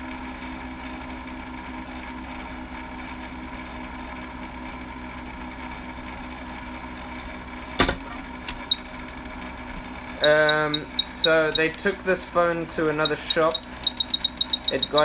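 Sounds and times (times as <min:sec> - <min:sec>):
sharp click: 0:07.8 - 0:08.8, 0:13.1 - 0:15.0.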